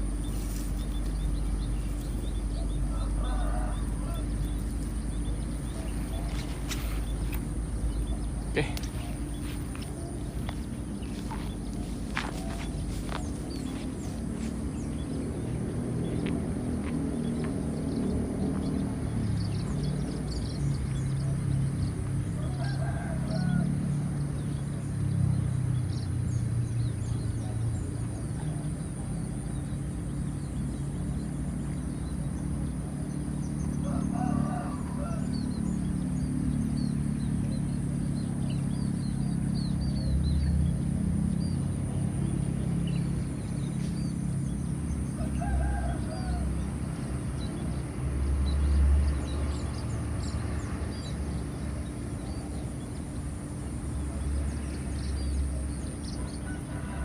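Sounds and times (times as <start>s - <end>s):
steady low rumble: 0.0s - 23.2s
rooster crowing: 2.5s - 5.0s, 22.4s - 24.0s, 33.8s - 35.6s, 45.2s - 46.8s, 56.1s - 57.0s.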